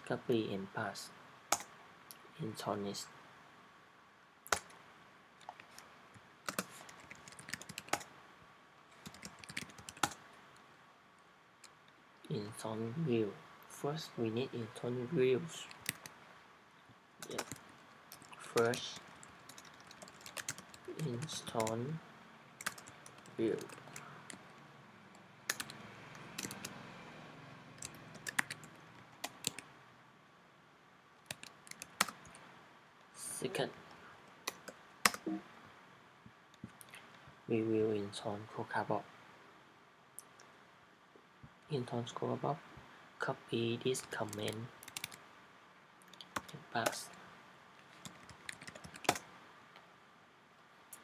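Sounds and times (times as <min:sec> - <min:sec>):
keyboard keys tapping: 0:06.5 - 0:08.1, 0:09.0 - 0:10.2, 0:17.2 - 0:21.8, 0:22.6 - 0:24.5, 0:25.5 - 0:25.8, 0:26.4 - 0:26.8, 0:27.8 - 0:29.6, 0:48.0 - 0:49.2.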